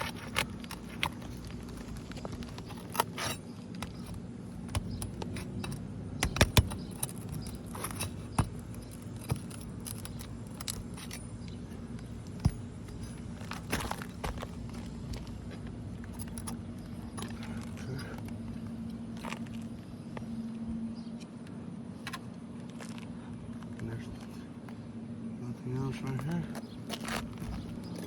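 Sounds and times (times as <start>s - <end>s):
pry bar clinking and scraping: 0.0s - 19.7s.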